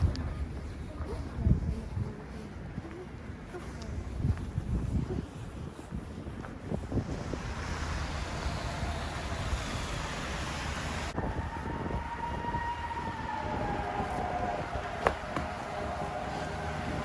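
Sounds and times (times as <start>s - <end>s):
large vehicle passing: 7.0s - 17.0s.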